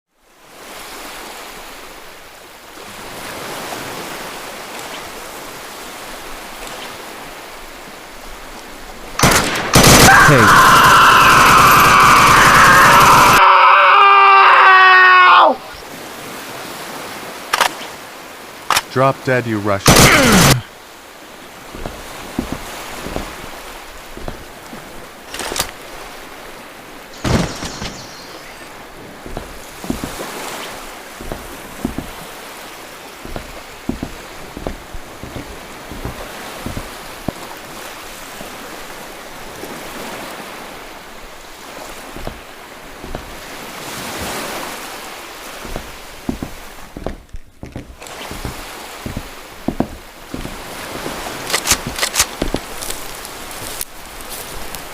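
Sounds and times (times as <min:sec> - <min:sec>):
rifle clicks and clacks: 0:17.5 - 0:17.9, 0:51.4 - 0:52.7.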